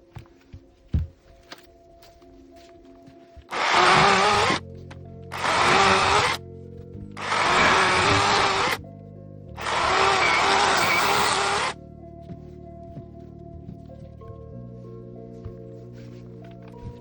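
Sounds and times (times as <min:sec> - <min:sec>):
background music: 0:00.0 - 0:17.0
electric chainsaw motor whining: 0:03.5 - 0:04.6, 0:05.3 - 0:06.4, 0:07.2 - 0:08.8, 0:09.6 - 0:11.8.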